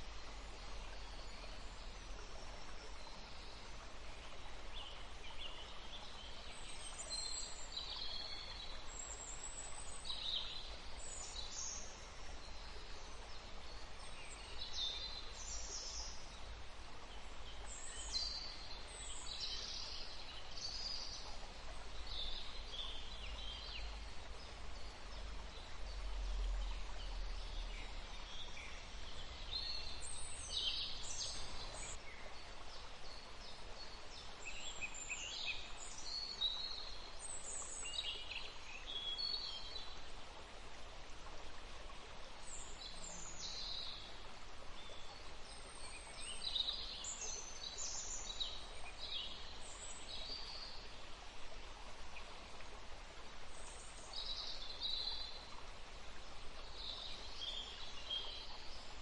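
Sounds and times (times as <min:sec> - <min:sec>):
background hiss: 0:00.0 - 0:59.0.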